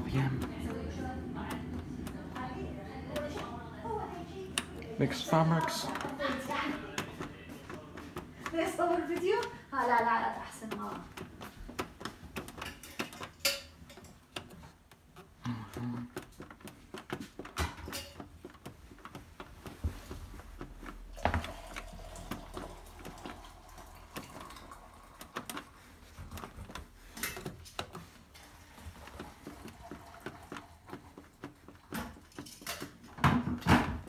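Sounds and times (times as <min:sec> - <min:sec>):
washing machine dial clicks: 0:00.0 - 0:03.9, 0:08.0 - 0:15.4, 0:20.6 - 0:34.0.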